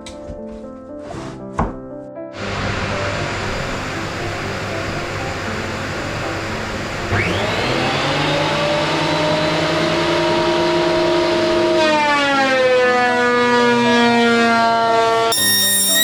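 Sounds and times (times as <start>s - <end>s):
electric planer motor whining: 7.1s - 13.6s, 15.3s - 16.0s.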